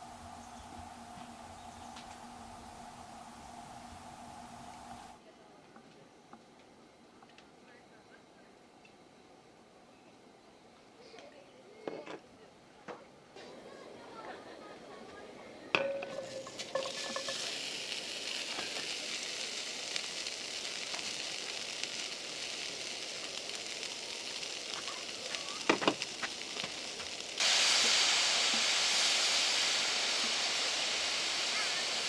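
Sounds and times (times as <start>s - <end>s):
food sizzling in a pan: 0.0s - 5.2s, 15.7s - 32.0s
clink: 15.8s - 17.5s.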